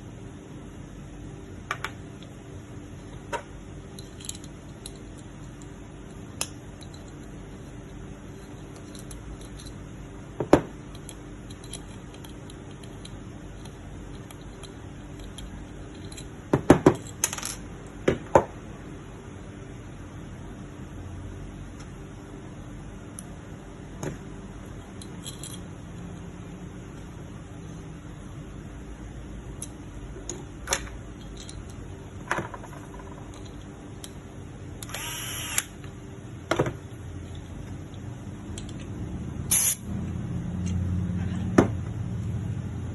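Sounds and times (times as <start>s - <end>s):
steady low hum: 0.0s - 42.9s
clicks and knocks of small parts: 8.4s - 9.8s, 10.5s - 17.6s, 29.6s - 34.2s.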